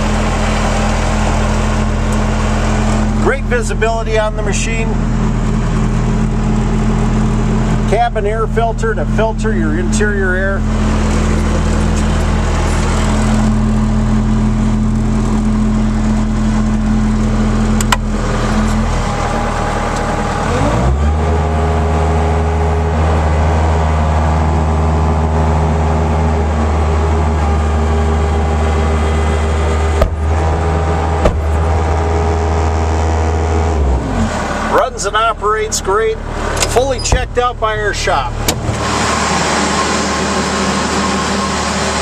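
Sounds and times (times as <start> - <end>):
diesel engine idling and revving: 0.0 - 42.0.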